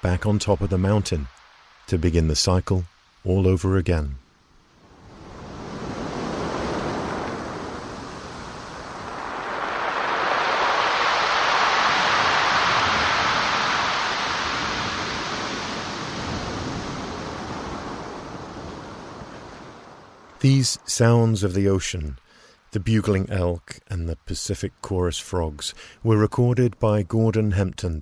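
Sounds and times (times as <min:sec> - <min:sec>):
waves washing over pebble beach: 0:05.0 - 0:19.8.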